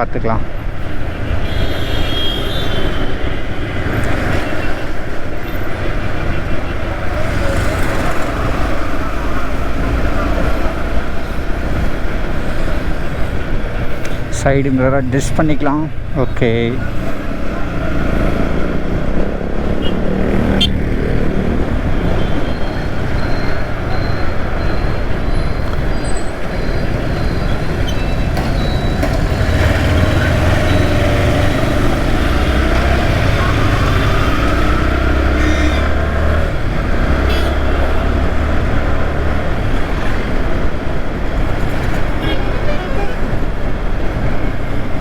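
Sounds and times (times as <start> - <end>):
passing road traffic: 0.0 - 45.0
motorcycle engine running: 6.7 - 11.1.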